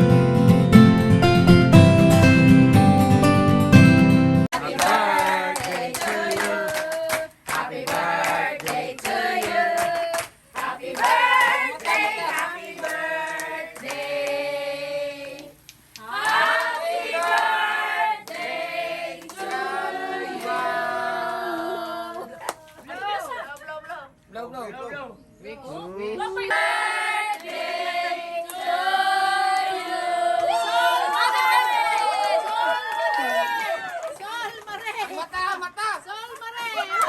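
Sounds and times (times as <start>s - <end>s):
group singing together: 4.5s - 22.4s, 26.1s - 31.2s
hand clapping: 4.6s - 14.4s, 15.2s - 18.5s, 19.2s - 19.7s, 22.2s - 22.7s.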